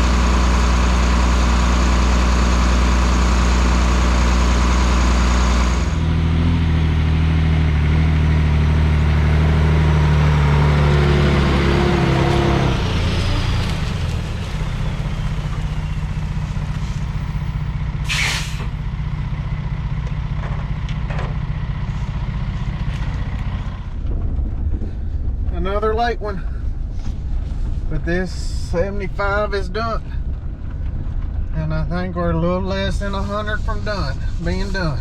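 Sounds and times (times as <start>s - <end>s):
diesel engine running: 0.0s - 35.0s
air hiss: 18.1s - 18.7s.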